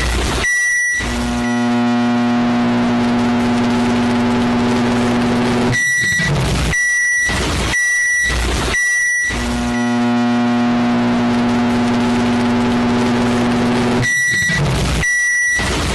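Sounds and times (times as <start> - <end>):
microwave high beeps: 0.4 - 1.8, 3.6 - 10.1, 10.8 - 15.9
microwave oven humming: 1.0 - 5.8, 9.4 - 14.1.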